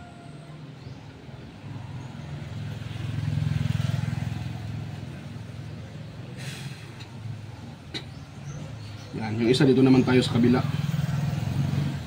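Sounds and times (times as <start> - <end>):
vehicle passing by: 0.6 - 12.0
brief hiss: 6.4 - 7.1.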